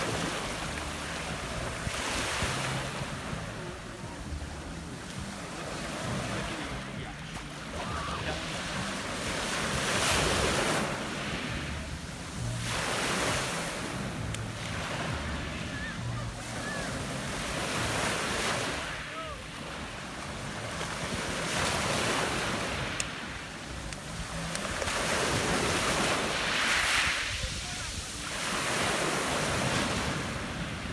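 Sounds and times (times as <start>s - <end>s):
waves washing up pebble beach: 0.0s - 3.9s, 5.4s - 30.9s
wind rumble on microphone: 19.8s - 30.9s.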